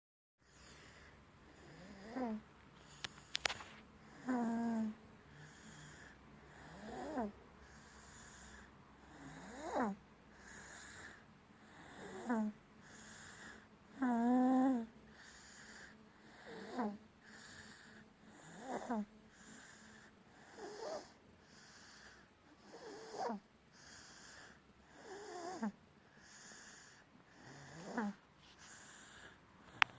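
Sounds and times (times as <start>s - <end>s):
whistling snoring: 1.6s - 2.4s, 5.5s - 29.2s.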